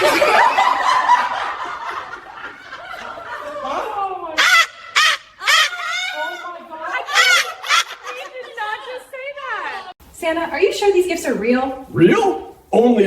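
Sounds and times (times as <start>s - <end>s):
women laughing: 0.0s - 10.0s.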